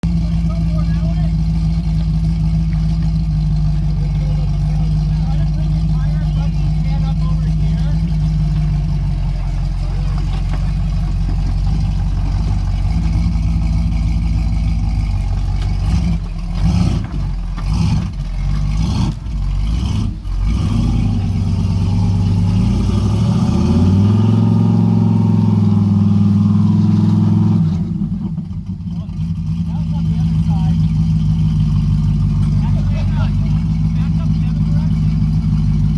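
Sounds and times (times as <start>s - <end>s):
car engine running: 0.0s - 35.9s
vehicle knocks and jolts: 1.4s - 21.3s.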